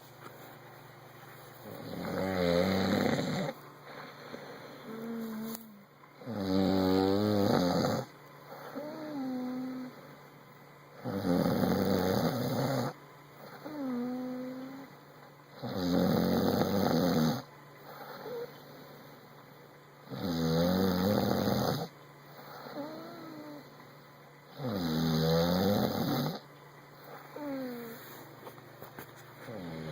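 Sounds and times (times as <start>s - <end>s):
man snoring: 1.7s - 3.6s, 6.2s - 8.1s, 8.7s - 9.9s, 11.0s - 14.8s, 15.6s - 17.5s, 20.1s - 21.9s, 24.5s - 26.4s.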